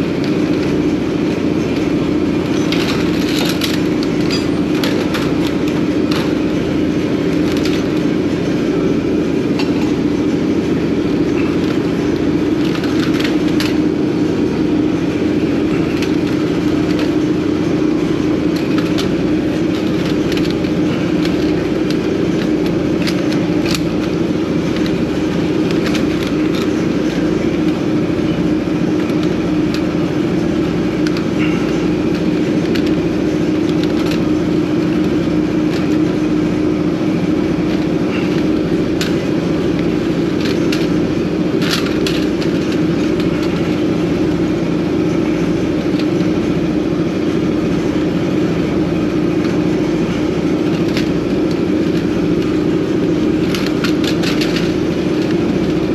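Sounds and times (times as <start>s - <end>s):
engine running: 0.0s - 55.9s.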